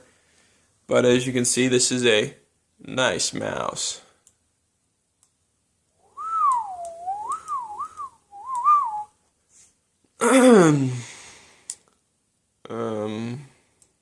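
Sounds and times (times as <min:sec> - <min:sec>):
person whistling a tune: 0:06.0 - 0:09.1.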